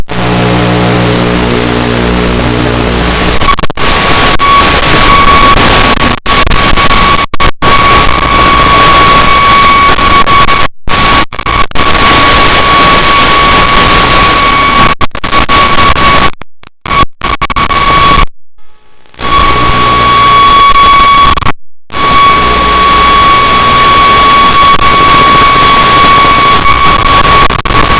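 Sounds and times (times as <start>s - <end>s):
loud static hiss: 0.0s - 27.9s
low hum of several tones: 0.1s - 3.4s.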